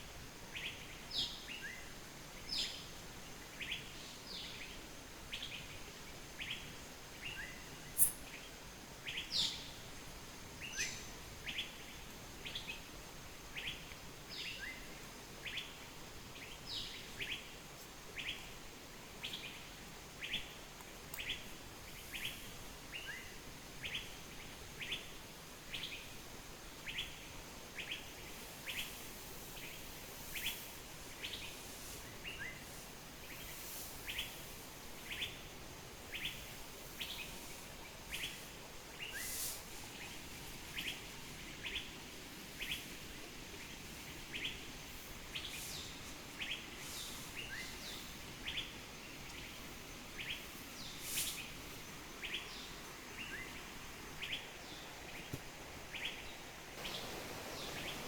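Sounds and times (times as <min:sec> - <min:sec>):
steady background hiss: 0:00.0 - 0:58.0
bird chirping: 0:54.2 - 0:58.0.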